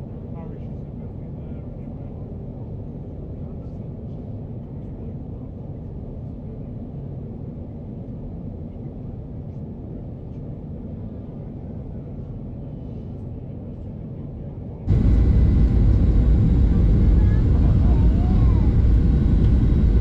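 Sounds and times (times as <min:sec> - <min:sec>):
airplane cabin rumble: 0:11.0 - 0:20.0.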